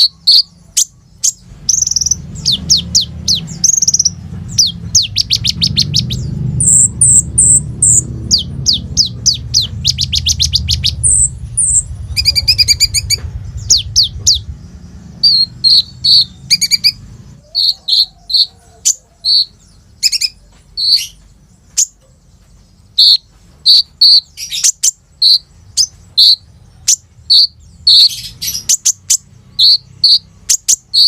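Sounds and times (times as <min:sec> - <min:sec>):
bird singing trills and chirps: 0:00.0 - 0:31.0
low hum: 0:01.4 - 0:18.2.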